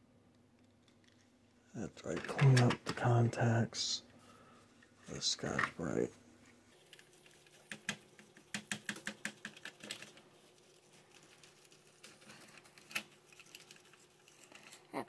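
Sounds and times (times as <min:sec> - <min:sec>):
light clicks and scratches: 0:06.7 - 0:15.0.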